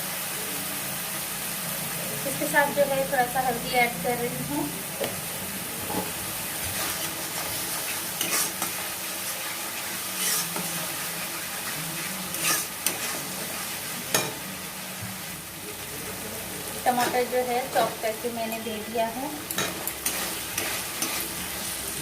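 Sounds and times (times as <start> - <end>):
paste sizzling in hot oil: 0.0 - 22.0
spoon scraping a pan: 5.8 - 9.3, 10.0 - 14.4, 19.5 - 21.7.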